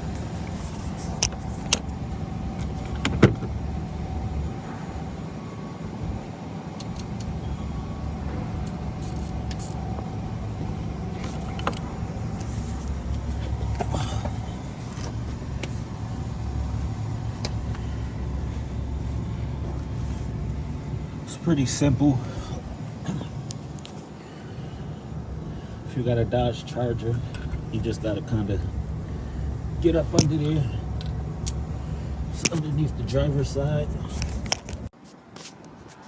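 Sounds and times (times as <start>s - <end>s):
steady low rumble: 0.0s - 34.9s
hand tools clinking on metal: 8.6s - 10.1s, 11.1s - 14.4s, 29.9s - 31.6s, 32.3s - 34.8s.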